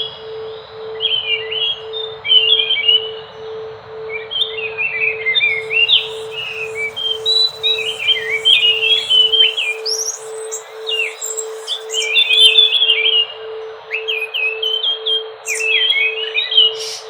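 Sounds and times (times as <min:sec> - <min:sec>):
low pulsing tone: 0:00.0 - 0:16.8
thrush singing: 0:05.3 - 0:13.4.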